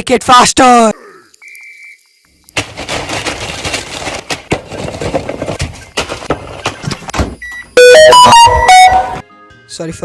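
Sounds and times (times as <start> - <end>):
rapid dense clattering and knocking: 2.6 - 7.3
loud blaring multi-pitch tone: 7.8 - 9.2.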